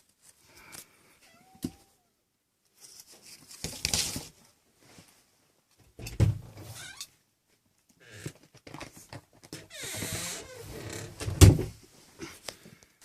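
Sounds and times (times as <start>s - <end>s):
kittens scuffling and rustling: 2.7s - 5.8s.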